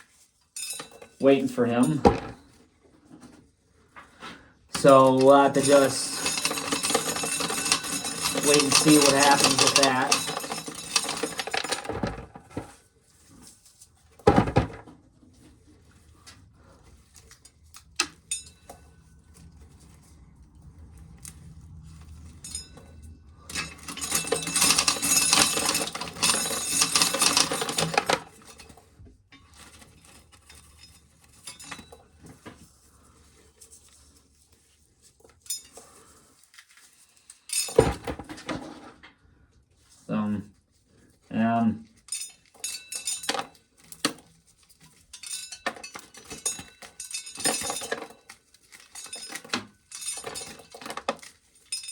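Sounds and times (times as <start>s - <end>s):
corn kernels clattering: 4.8s - 12.2s, 23.6s - 28.7s.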